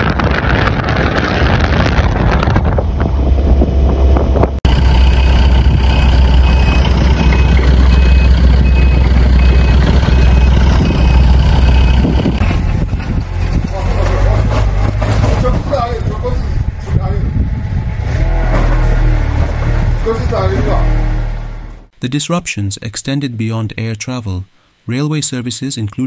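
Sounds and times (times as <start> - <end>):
wind buffeting microphone: 0.0 - 21.1
heavy vehicle engine rumble: 0.0 - 22.0
high warning beeps: 5.0 - 12.2.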